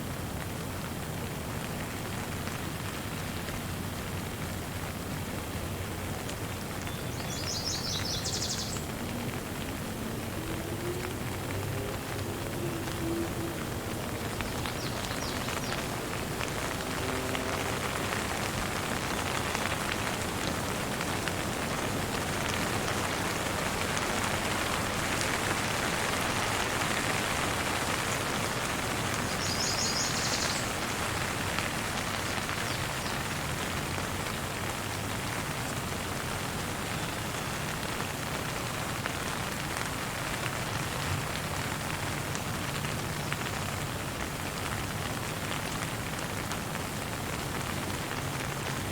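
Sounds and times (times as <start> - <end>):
steady rainfall: 0.0 - 48.9.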